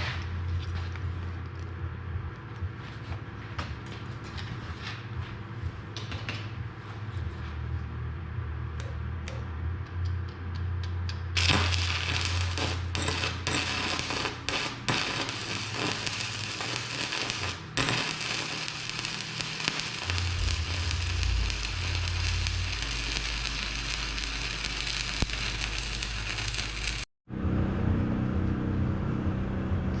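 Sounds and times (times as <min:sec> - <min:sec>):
welding arc crackling: 0:11.4 - 0:27.1.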